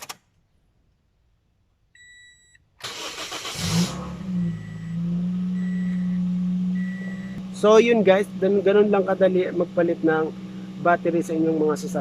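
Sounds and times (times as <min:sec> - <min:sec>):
car starter cranking: 0:02.8 - 0:06.2
car engine revving and idling: 0:03.2 - 0:12.0.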